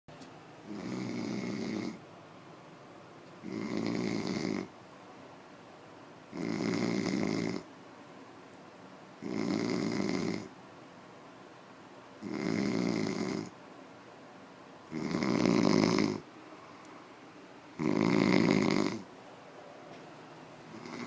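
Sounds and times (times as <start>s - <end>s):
man snoring: 0.7s - 2.0s, 3.4s - 4.7s, 6.3s - 7.7s, 9.2s - 10.5s, 12.2s - 13.5s, 14.9s - 16.2s, 17.8s - 19.1s, 20.7s - 21.0s.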